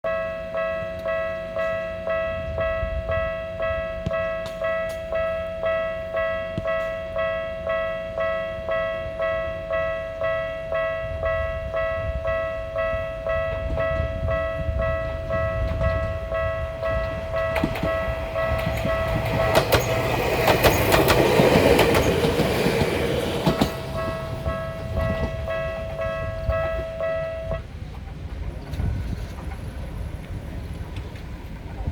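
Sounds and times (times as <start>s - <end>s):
level-crossing bell ringing: 0.0s - 27.6s
train wheels clattering: 11.8s - 31.9s.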